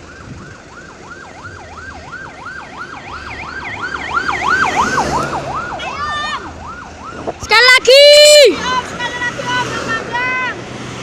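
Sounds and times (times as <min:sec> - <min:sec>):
electronic siren yelping: 0:00.0 - 0:08.2.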